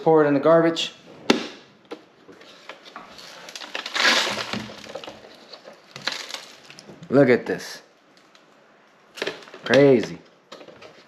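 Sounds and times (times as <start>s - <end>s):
debris rattling into trash can: 3.6s - 6.9s.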